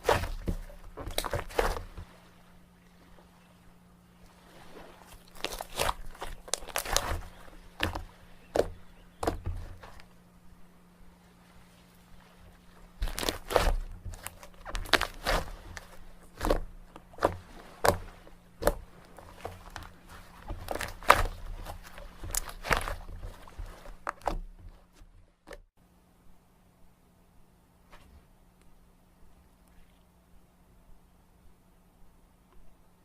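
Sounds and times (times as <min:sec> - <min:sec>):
slime crackling and popping: 0:05.3 - 0:08.6, 0:13.0 - 0:16.6, 0:20.6 - 0:24.4.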